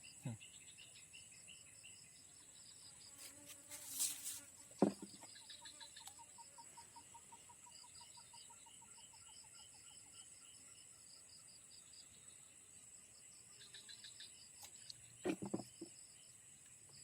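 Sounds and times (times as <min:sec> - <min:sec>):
insects chirping: 0:00.0 - 0:17.0
rustle: 0:02.9 - 0:06.2.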